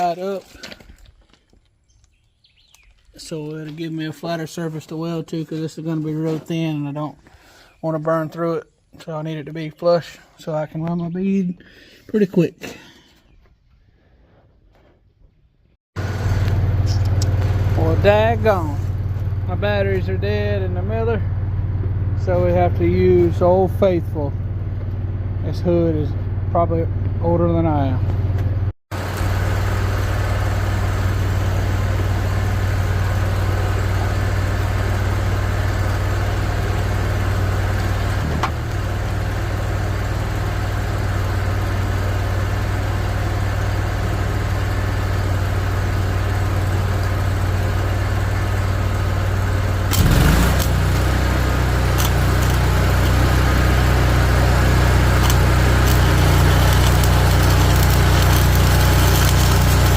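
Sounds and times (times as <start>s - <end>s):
engine idling: 29.0s - 59.9s.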